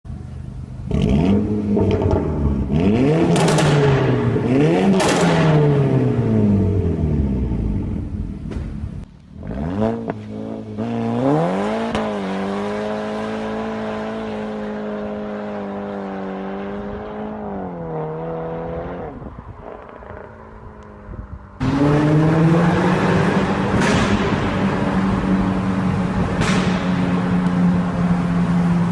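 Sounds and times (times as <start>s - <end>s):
car exhaust revving: 0.7s - 28.9s
sharp exhaust pops: 3.2s - 4.1s, 4.9s - 5.6s, 23.7s - 25.2s, 26.2s - 27.6s.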